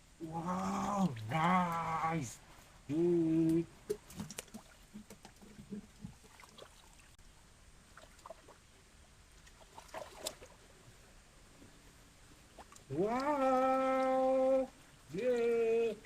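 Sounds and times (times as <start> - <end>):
hands splashing pond water: 2.9 - 7.2, 7.8 - 8.7, 9.3 - 10.7, 12.5 - 14.6.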